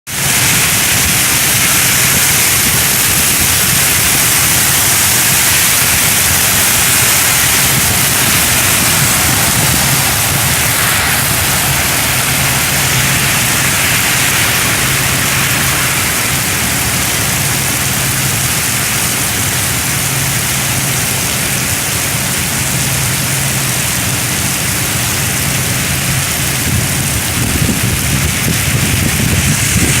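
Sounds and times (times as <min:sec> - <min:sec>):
rain falling steadily: 0:00.1 - 0:30.0
low steady rumble: 0:00.2 - 0:30.0.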